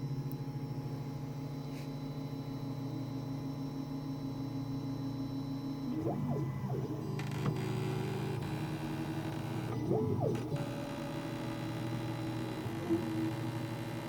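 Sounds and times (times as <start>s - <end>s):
printer stepper motors humming: 5.5s - 14.0s.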